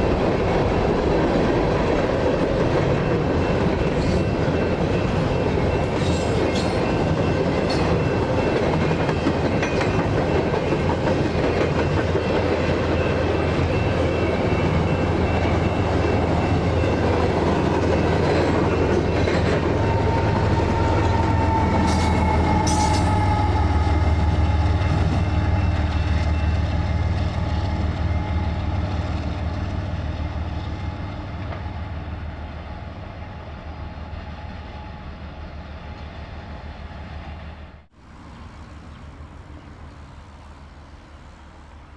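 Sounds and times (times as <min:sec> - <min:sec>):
wheels clicking over rail joints: 0:00.0 - 0:23.6
train rumbling past: 0:00.0 - 0:41.9.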